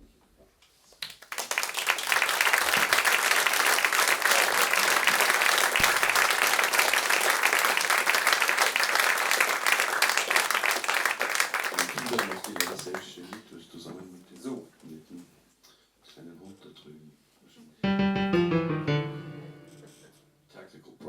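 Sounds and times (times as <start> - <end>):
audience applauding: 1.0 - 13.4.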